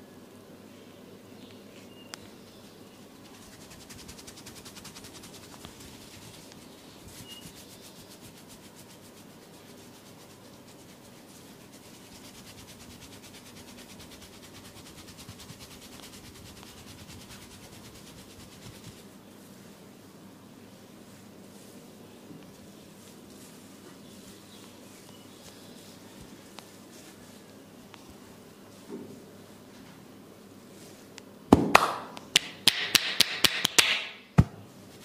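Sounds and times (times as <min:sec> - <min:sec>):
hands rubbing oiled skin: 0:03.1 - 0:19.2, 0:21.1 - 0:28.3.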